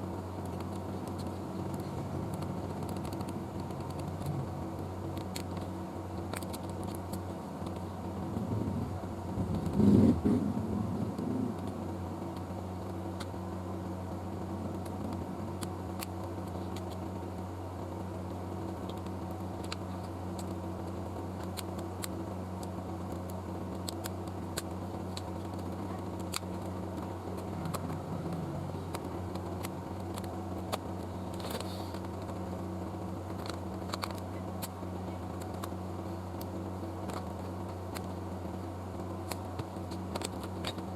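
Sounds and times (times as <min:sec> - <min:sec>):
electrical hum: 0:00.0 - 0:40.9
rustle of handling: 0:24.0 - 0:32.5.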